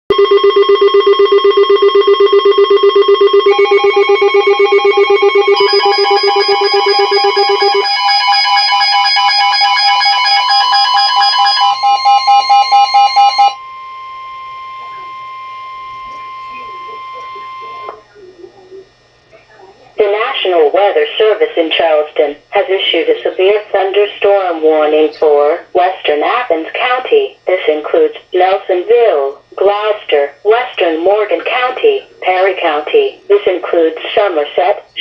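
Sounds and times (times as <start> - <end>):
rapidly pulsing alert beeps: 0.1 - 13.6
steady alert tone: 0.1 - 13.6.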